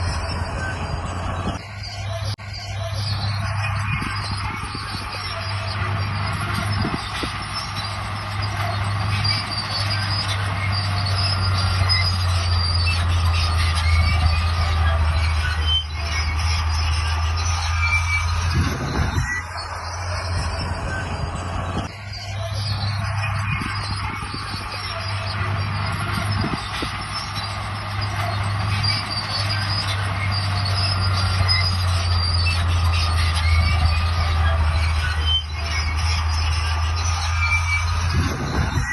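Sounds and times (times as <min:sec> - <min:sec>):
diesel engine running: 0:00.0 - 0:38.9
steel tracks squealing and clanking: 0:00.0 - 0:38.9.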